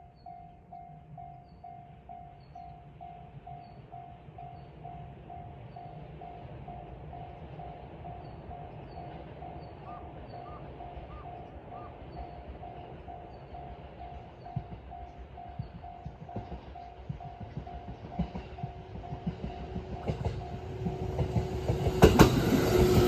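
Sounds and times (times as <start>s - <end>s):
train knocking thumps: 12.2s - 23.0s.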